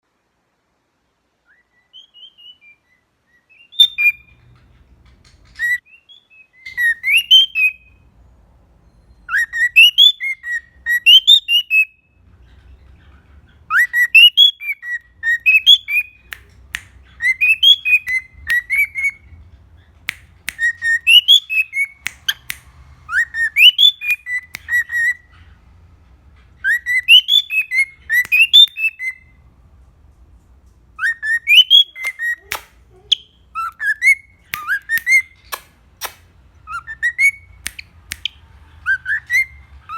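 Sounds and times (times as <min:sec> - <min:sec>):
cockatiel whistling: 0:03.5 - 0:04.4, 0:06.6 - 0:08.0, 0:09.2 - 0:12.0, 0:13.7 - 0:16.5, 0:17.1 - 0:19.4, 0:20.1 - 0:22.5, 0:23.1 - 0:25.5, 0:26.6 - 0:29.4, 0:31.0 - 0:39.9
sharp clicks: 0:34.6 - 0:36.3.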